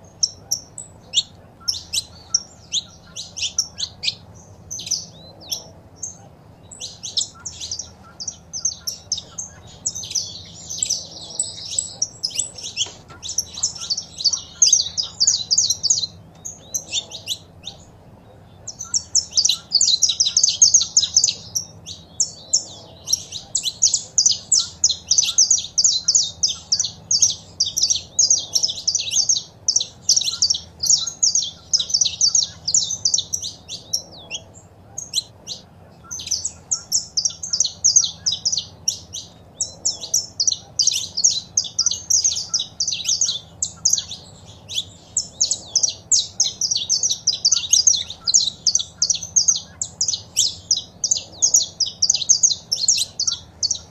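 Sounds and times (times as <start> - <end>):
finch chirping: 0.0 - 53.9.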